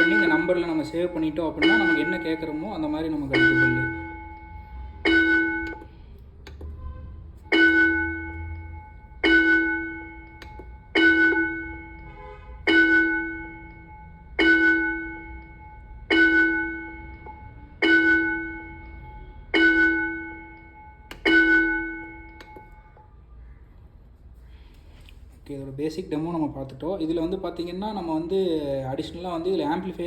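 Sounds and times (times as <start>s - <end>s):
school bell ringing through speaker: 0.0s - 6.0s, 7.4s - 23.2s.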